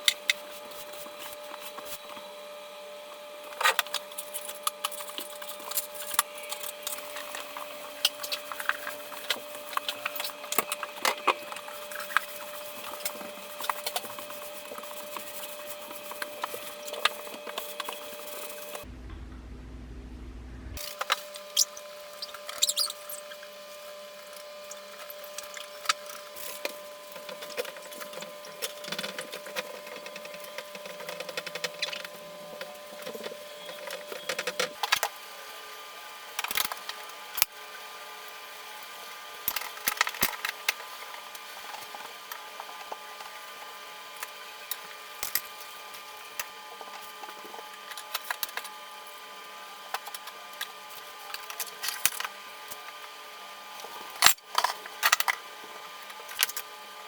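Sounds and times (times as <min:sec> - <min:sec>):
steady hum: 0:04.1 - 0:22.4.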